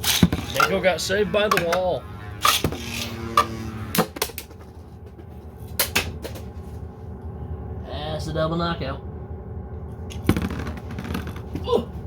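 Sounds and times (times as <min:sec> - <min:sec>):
spinning tops humming: 0:00.0 - 0:06.8.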